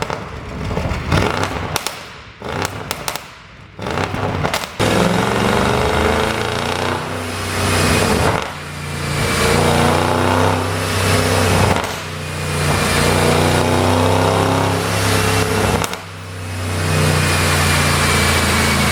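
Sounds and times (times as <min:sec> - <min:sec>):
car engine revving: 0:00.0 - 0:18.9
exhaust crack: 0:00.0 - 0:18.9.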